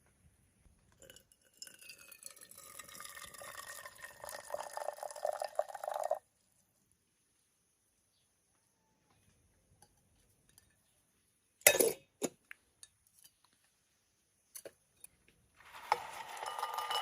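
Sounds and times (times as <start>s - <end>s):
liquid pouring into container: 1.6s - 6.2s.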